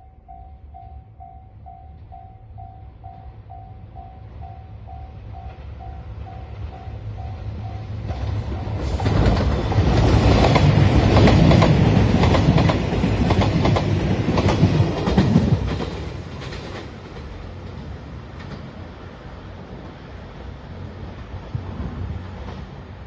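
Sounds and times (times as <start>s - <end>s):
train wheels clattering: 5.4s - 18.8s.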